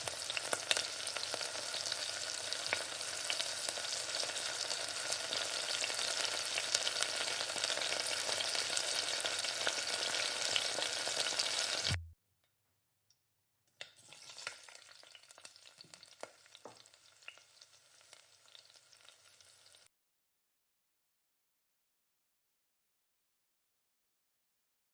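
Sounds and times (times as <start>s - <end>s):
food sizzling in hot oil: 0.0s - 12.0s, 13.8s - 19.9s.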